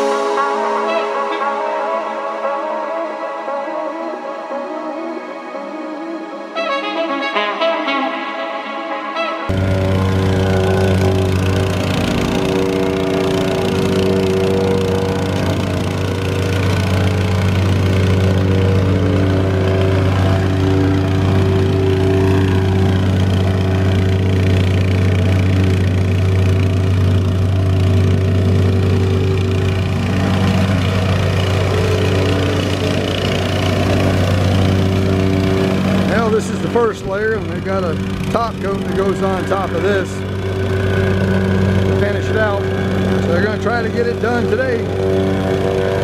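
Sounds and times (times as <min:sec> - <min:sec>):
heavy machine engine humming: 0:09.5 - 0:46.0.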